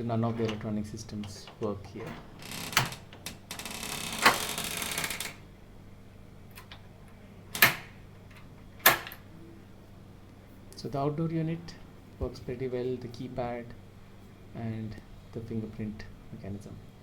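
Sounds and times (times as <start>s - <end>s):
door lock motor whirring: 0.2s - 5.5s, 7.5s - 8.0s.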